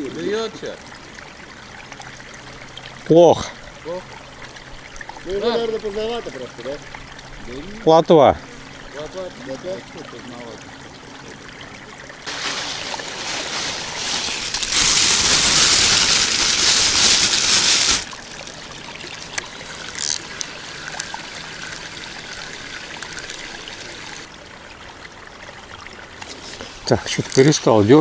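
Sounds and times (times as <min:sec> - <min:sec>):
water splashing and pouring: 0:11.2 - 0:28.0.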